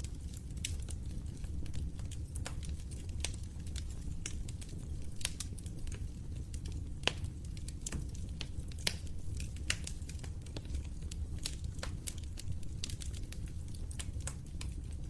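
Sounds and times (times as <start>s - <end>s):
low rumble of flames: 0.0s - 15.0s
wood fire popping: 0.0s - 15.0s.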